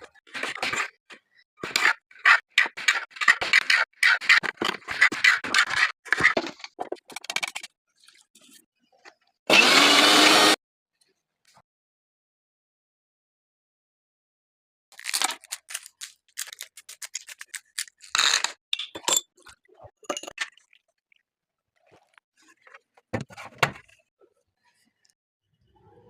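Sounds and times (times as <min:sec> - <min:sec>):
crisp crunching and scraping clicks: 0:15.0 - 0:18.6.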